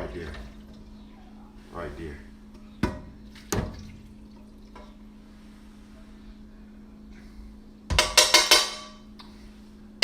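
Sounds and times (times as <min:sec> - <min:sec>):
faint steady hum: 0:00.0 - 0:10.0
metal cookware clanking: 0:07.9 - 0:09.1.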